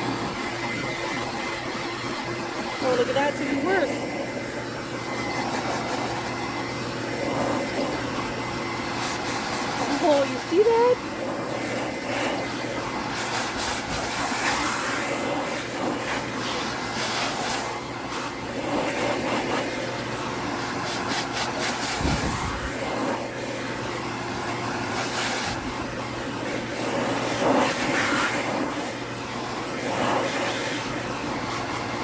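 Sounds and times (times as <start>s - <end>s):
electric air blower humming: 0.0s - 32.0s.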